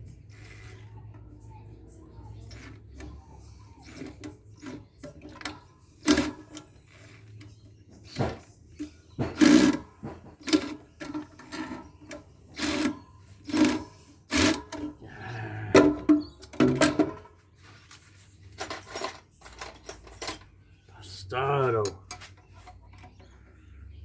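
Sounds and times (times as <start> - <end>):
hand tools knocking on metal: 8.1 - 12.9, 15.7 - 17.3.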